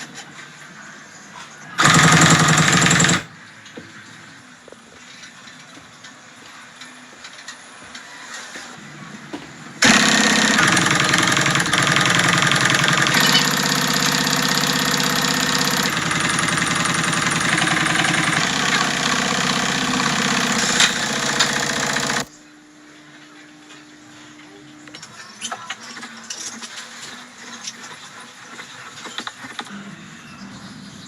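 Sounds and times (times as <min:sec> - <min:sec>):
grinder motor grinding: 0:01.8 - 0:03.3, 0:09.8 - 0:22.3.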